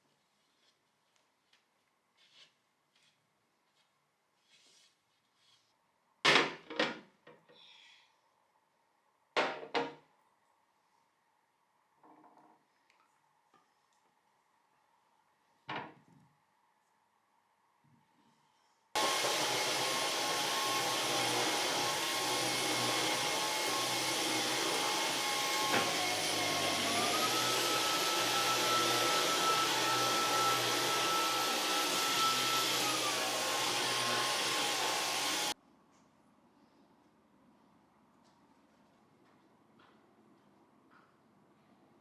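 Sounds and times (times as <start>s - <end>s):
vacuum cleaner motor whining: 19.0s - 35.6s.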